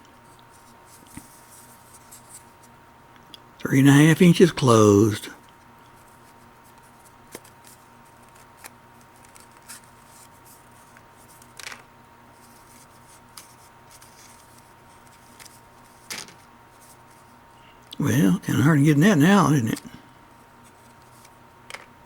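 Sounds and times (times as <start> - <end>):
faint hum: 3.6 - 5.4, 17.6 - 20.1.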